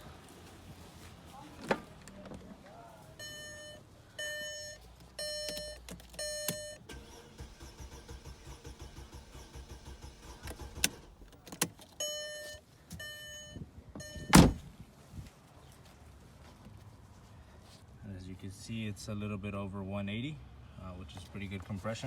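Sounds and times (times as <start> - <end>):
short electronic beeps: 3.2 - 6.8, 12.0 - 14.6
engine cranking on starter: 6.4 - 11.4.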